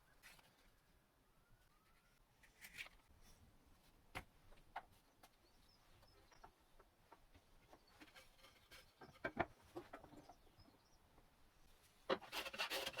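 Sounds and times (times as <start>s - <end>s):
faint bird chirps: 0.0s - 2.2s.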